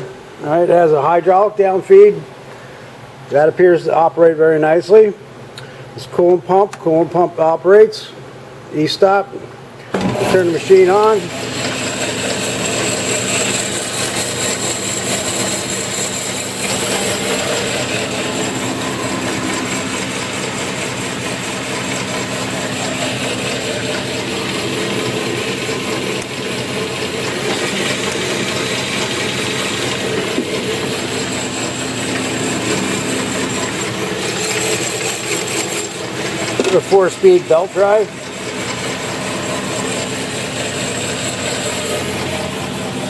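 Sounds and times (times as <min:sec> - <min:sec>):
bandsaw motor humming: 0:09.8 - 0:43.0.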